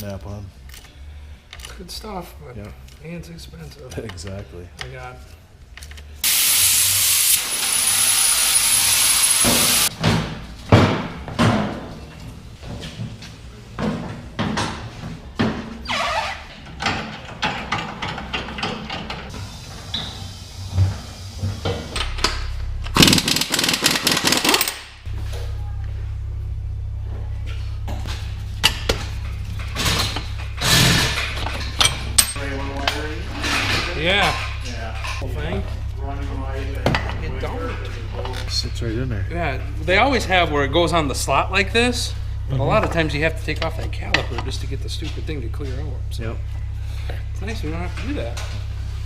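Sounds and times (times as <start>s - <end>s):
hiss of air spray: 6.2s - 9.9s
steady low hum: 19.2s - 23.9s, 24.9s - 49.0s.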